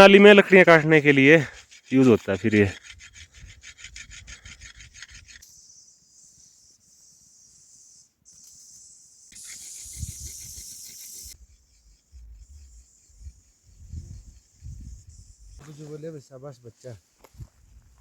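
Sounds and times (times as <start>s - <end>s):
blade being sharpened: 8.4s - 12.7s.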